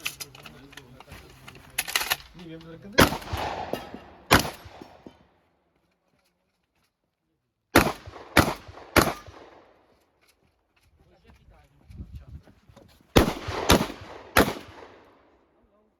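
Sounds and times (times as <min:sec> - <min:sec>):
shotgun shots with echo: 0:03.0 - 0:05.2, 0:07.8 - 0:09.8, 0:13.2 - 0:15.2.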